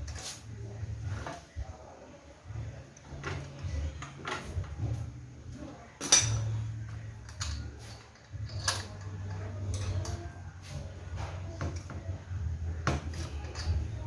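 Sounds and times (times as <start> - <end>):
metallic clinks and knocks: 6.0 - 10.3, 12.8 - 14.0.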